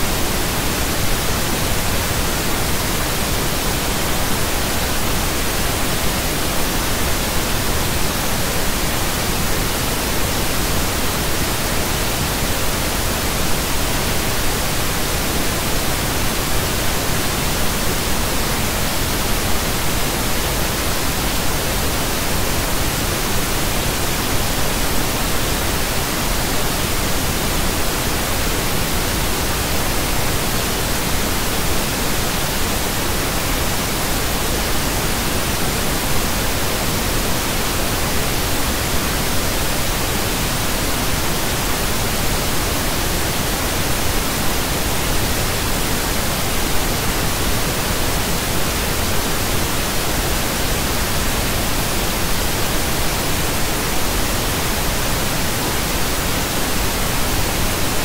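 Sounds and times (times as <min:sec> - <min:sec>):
pink noise hiss: 0:00.0 - 0:58.0.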